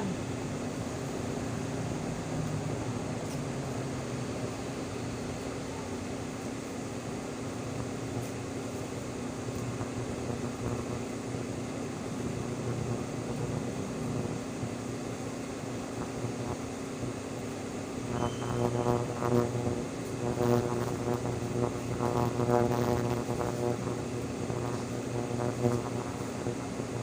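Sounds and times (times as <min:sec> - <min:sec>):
mechanical hum: 0:00.0 - 0:27.0
loud multi-pitched tone: 0:18.0 - 0:21.0.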